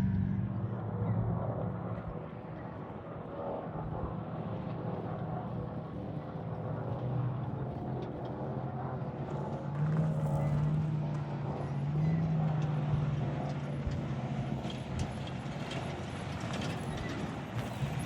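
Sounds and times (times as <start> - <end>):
vehicle engine running: 0.0 - 2.3, 9.2 - 18.0.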